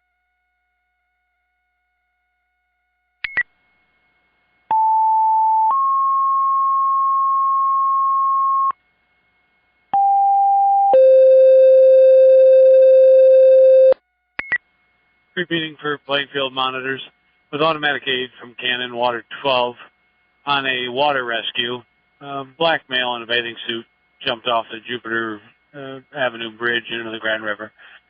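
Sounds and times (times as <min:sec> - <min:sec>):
two-tone paging tones: 0:04.7 - 0:08.7, 0:10.0 - 0:14.6.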